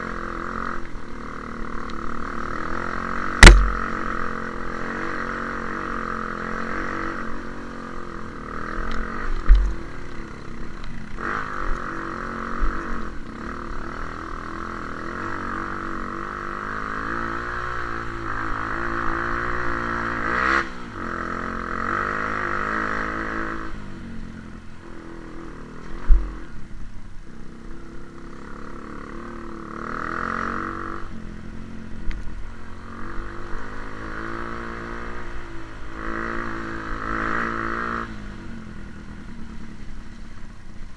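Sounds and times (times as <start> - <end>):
motorcycle engine revving: 0.0 - 26.7, 27.3 - 40.1
sharp thumps: 3.4 - 4.2, 9.4 - 9.8.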